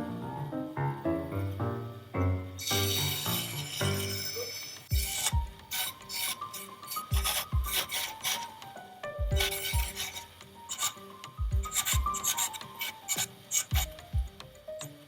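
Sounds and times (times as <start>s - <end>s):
hand filing strokes: 2.7s - 8.6s, 9.3s - 11.1s, 11.7s - 14.0s
dull low thumps: 4.9s - 5.6s.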